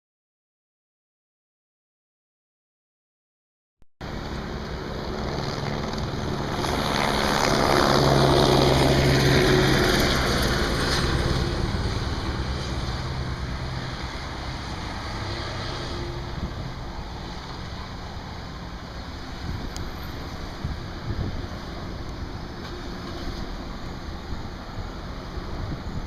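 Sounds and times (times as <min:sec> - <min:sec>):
helicopter flying overhead: 0:04.0 - 0:26.0.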